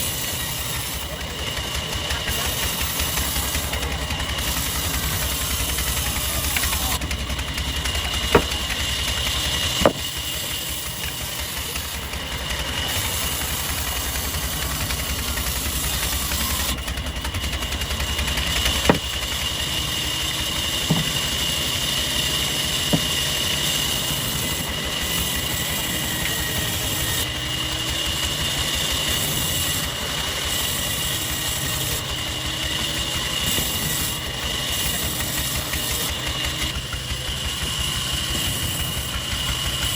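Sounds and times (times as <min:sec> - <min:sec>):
machinery whining and humming: 0:00.0 - 0:39.9
sharp knocks: 0:07.8 - 0:08.9, 0:09.7 - 0:10.2, 0:18.2 - 0:19.4, 0:20.9 - 0:21.4, 0:22.9 - 0:23.2.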